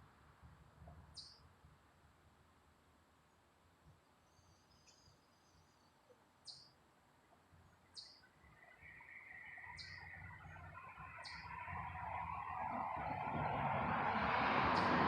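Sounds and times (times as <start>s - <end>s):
faint high bird twittering: 1.1s - 1.4s, 4.2s - 6.8s, 7.6s - 12.8s
high downward bird chirp: 7.8s - 13.5s.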